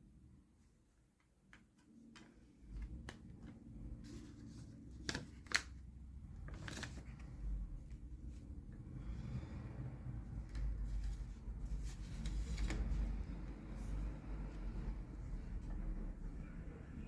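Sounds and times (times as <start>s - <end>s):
cd packaging clicks and rustles: 1.5s - 7.4s.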